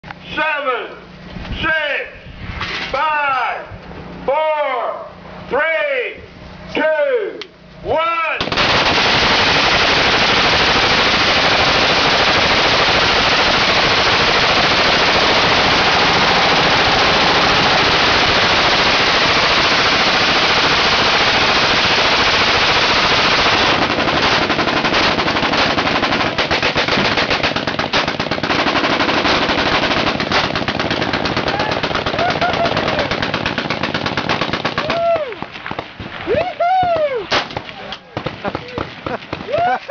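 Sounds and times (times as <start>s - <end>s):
machine guns firing: 8.4s - 36.0s, 37.3s - 39.5s.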